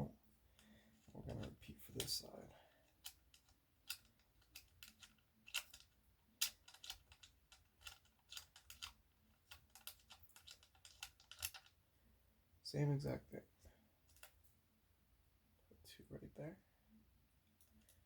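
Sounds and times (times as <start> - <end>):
small parts clicking and tapping: 2.8 - 11.8, 14.1 - 14.4.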